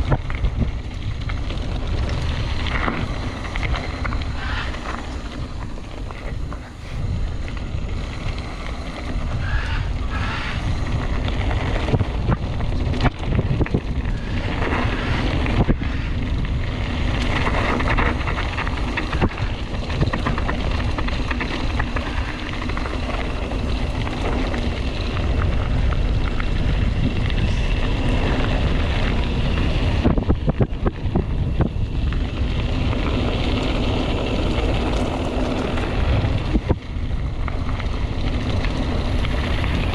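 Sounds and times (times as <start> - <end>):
bike tyres rumbling over ground: 0.0 - 39.9
wind buffeting microphone: 0.0 - 39.9
bike knocks and rattles: 17.2 - 26.7.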